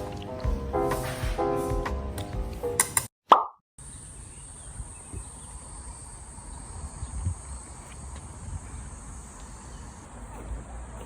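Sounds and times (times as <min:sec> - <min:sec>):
insects chirring: 0:03.8 - 0:11.0.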